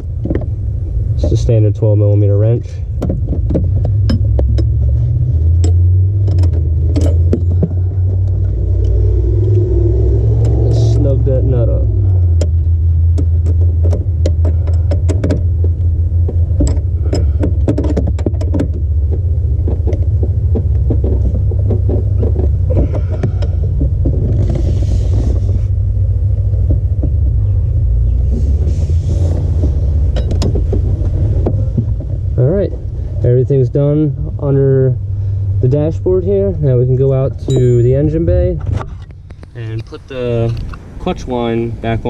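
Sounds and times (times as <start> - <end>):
steady low rumble: 0.0 - 42.0
rustles: 2.8 - 33.3.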